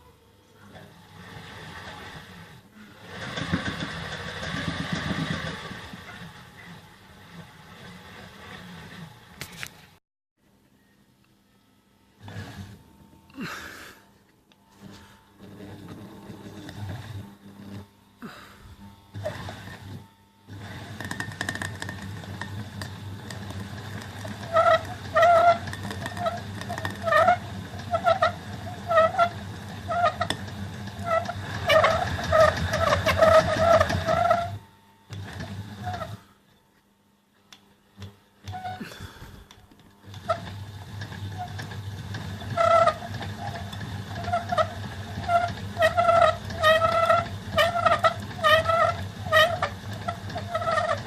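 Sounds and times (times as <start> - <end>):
sewing machine motor humming: 0.6 - 9.7, 12.2 - 13.9, 14.7 - 36.4, 37.8 - 51.0
high squeaks: 20.6 - 34.6, 35.7 - 36.2, 42.3 - 51.0.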